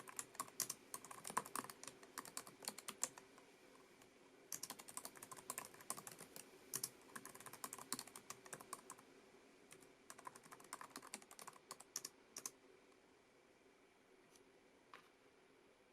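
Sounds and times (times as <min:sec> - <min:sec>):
keyboard typing: 0:00.0 - 0:03.4, 0:04.5 - 0:09.0, 0:09.7 - 0:12.6.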